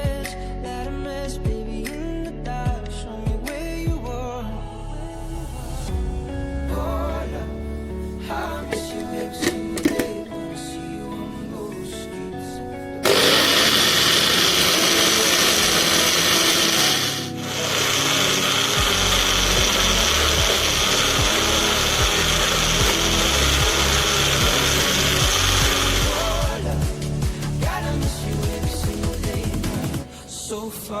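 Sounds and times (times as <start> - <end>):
electric blender running: 13.0 - 27.5.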